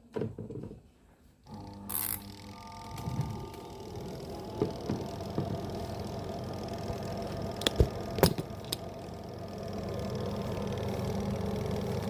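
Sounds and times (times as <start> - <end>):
dryer motor humming: 1.5 - 12.0.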